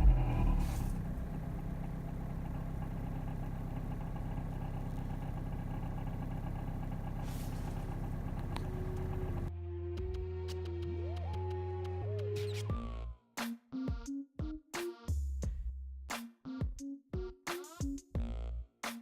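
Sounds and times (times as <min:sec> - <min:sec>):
diesel engine idling: 0:00.0 - 0:09.5.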